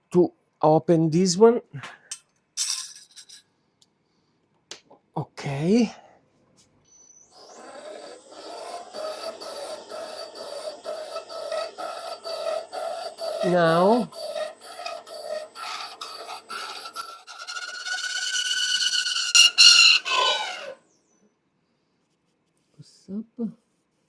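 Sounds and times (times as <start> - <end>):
milling tool scraping metal: 2.6 - 3.4, 7.4 - 20.8
high squeal: 7.4 - 20.8.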